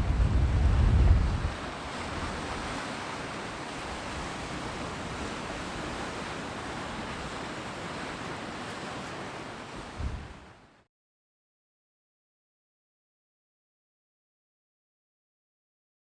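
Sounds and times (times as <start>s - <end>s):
wind rumbling on microphone: 0.0s - 8.4s, 9.0s - 10.6s
sea surf washing on shore: 0.0s - 10.9s.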